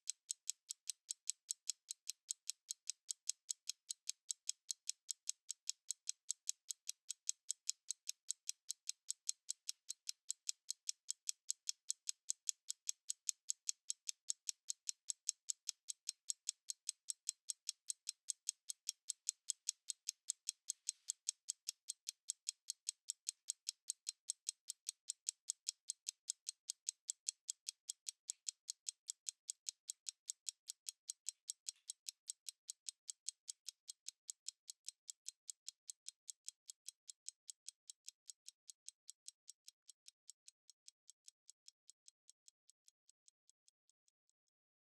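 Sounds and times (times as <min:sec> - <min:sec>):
stopwatch ticking: 0:00.0 - 0:44.2.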